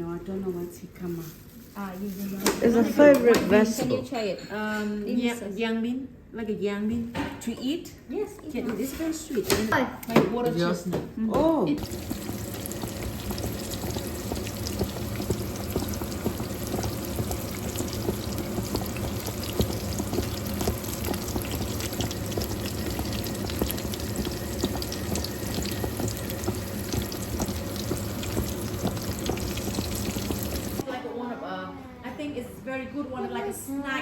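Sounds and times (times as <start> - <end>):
steady hissing kitchen noise: 0.0 - 5.4, 11.5 - 30.9.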